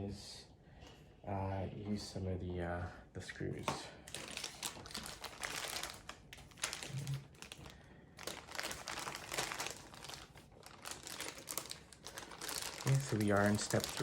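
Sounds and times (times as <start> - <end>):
plastic packaging crinkling: 4.1 - 14.0.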